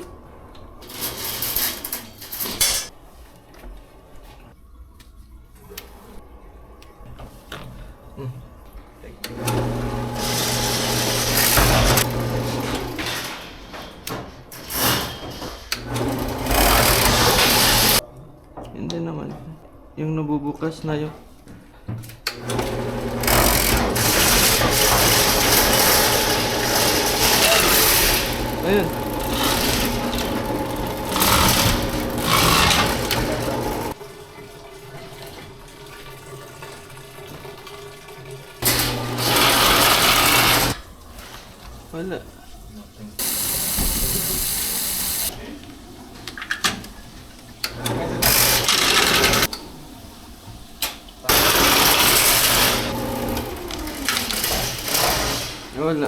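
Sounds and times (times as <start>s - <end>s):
electric motor humming and hissing: 9.3s - 13.0s, 15.8s - 18.0s, 22.4s - 34.0s, 38.6s - 40.8s, 43.2s - 45.5s, 47.7s - 49.5s, 51.3s - 56.0s
low machine hum: 22.4s - 34.0s.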